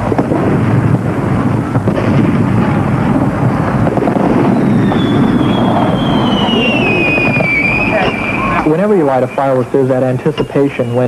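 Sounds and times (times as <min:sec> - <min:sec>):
fireworks rumbling and crackling: 0:00.0 - 0:11.0
firework whistle falling in pitch: 0:04.4 - 0:08.7.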